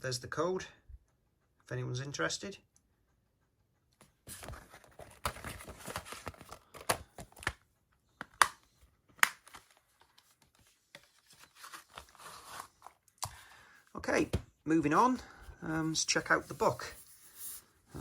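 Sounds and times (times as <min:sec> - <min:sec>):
paper and packaging rustling: 0:04.3 - 0:07.6, 0:09.1 - 0:13.7, 0:14.8 - 0:18.0.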